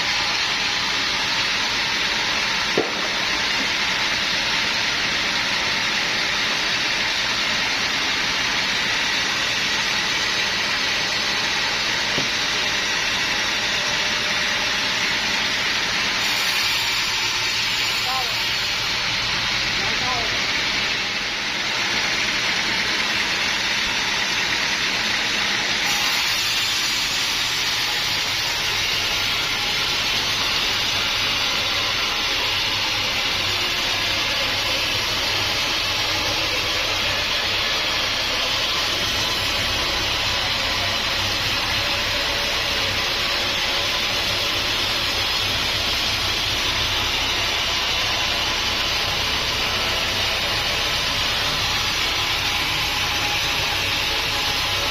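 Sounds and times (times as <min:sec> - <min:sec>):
sawmill machinery running: 0:00.0 - 0:54.9.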